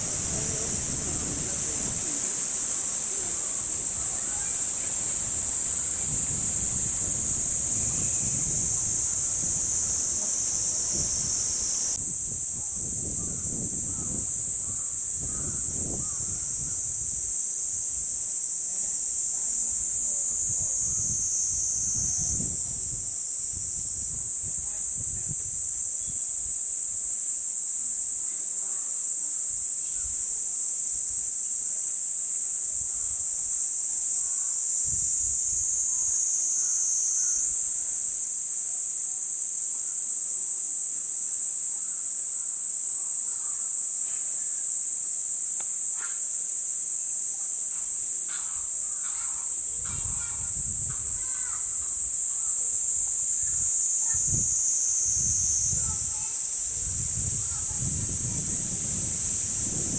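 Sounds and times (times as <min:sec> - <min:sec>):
wind buffets on microphone: 0:00.0 - 0:18.2, 0:19.6 - 0:26.7, 0:34.8 - 0:35.8, 0:49.1 - 0:59.9
cicadas droning: 0:00.0 - 0:59.9.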